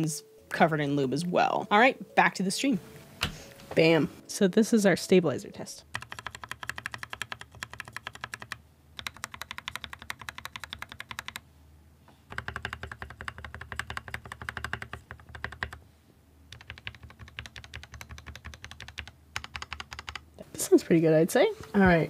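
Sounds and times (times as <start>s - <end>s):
mechanical keyboard clacks: 5.9s - 11.4s, 12.3s - 15.8s, 16.5s - 20.2s.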